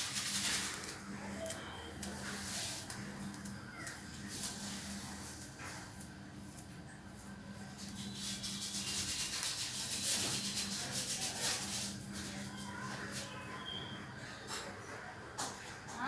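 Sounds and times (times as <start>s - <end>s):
comb rubbing through dry hair: 0.0s - 6.6s, 7.6s - 13.4s.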